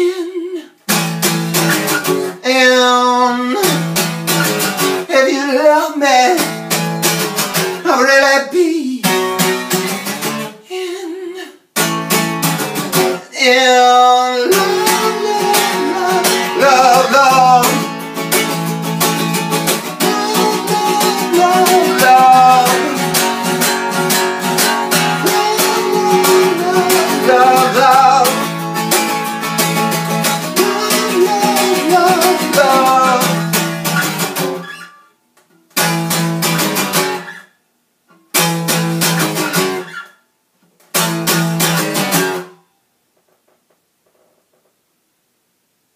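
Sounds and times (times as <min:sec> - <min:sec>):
acoustic guitar strumming: 0:00.9 - 0:10.6, 0:11.7 - 0:37.5, 0:38.1 - 0:40.3, 0:40.9 - 0:42.8
wordless singing: 0:02.3 - 0:03.8, 0:13.2 - 0:17.9, 0:19.8 - 0:28.8, 0:30.3 - 0:33.6.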